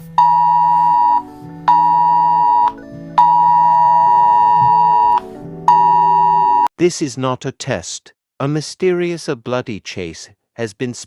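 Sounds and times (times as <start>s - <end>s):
electronic alert beep: 0.2s - 6.7s.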